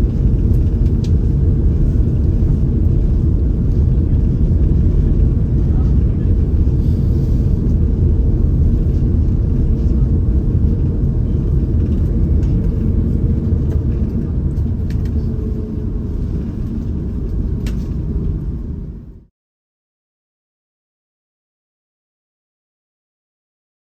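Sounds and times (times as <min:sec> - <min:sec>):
airliner cabin rumble: 0:00.0 - 0:19.3.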